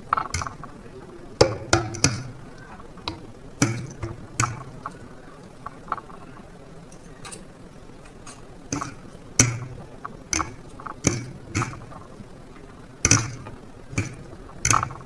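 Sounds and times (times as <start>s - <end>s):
utensils clinking against a bowl: 6.9s - 12.1s.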